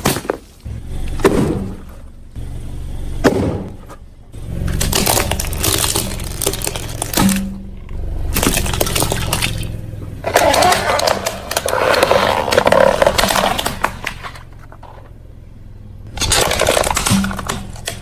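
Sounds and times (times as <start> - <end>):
low engine hum: 0.6 - 18.0
tyre crushing brittle objects: 4.6 - 7.6, 10.2 - 15.0, 16.1 - 18.0.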